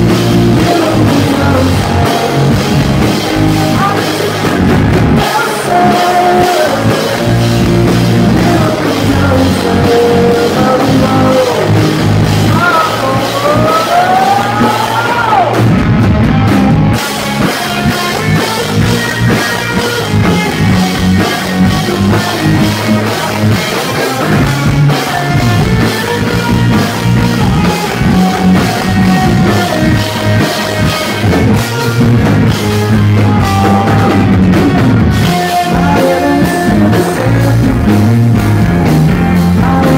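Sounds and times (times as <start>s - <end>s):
man singing: 0.0s - 15.6s, 32.7s - 38.4s, 39.2s - 39.9s
rock band playing: 0.0s - 39.9s.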